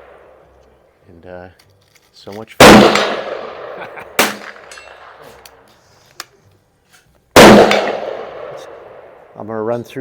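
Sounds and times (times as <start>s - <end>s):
gunshots echoing: 2.6s - 5.6s, 7.4s - 9.3s.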